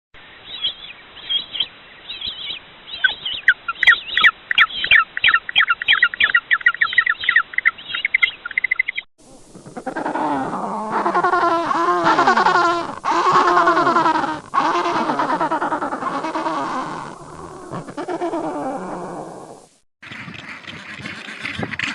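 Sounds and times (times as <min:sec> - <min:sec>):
penguins braying: 0:09.6 - 0:18.9
penguins chirping: 0:09.7 - 0:18.8.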